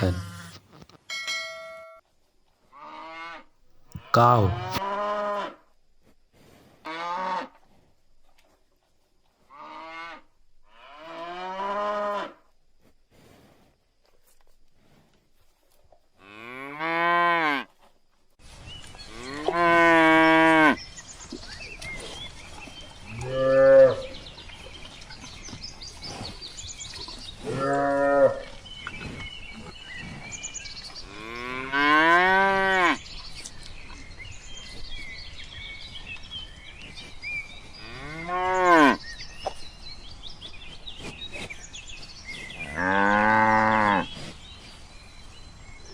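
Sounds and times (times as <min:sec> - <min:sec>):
outdoor background noise: 0:00.0 - 0:45.9
cows mooing: 0:23.2 - 0:24.1, 0:42.8 - 0:44.1.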